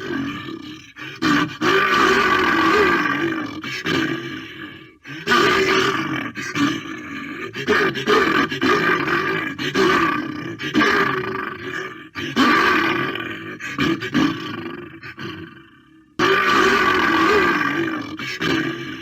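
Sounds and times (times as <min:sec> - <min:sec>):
bear roaring: 0:00.0 - 0:19.0.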